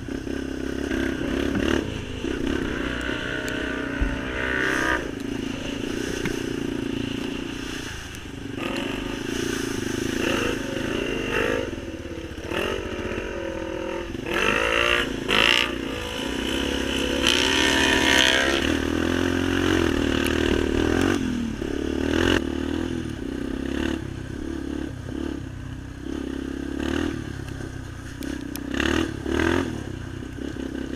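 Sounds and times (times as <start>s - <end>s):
off-road vehicle engine revving: 0.0s - 30.9s.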